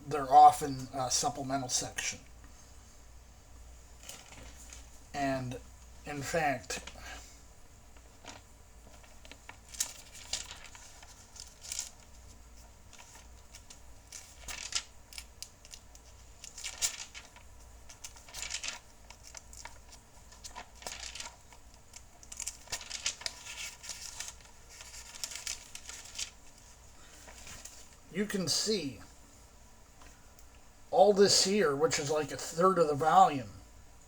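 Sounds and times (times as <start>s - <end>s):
pages rustling: 4.0s - 5.0s, 7.9s - 28.0s.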